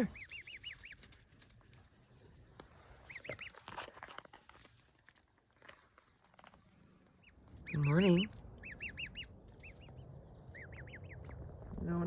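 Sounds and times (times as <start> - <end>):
gosling peeping softly: 0.0 - 1.5, 2.4 - 3.8, 6.7 - 12.0.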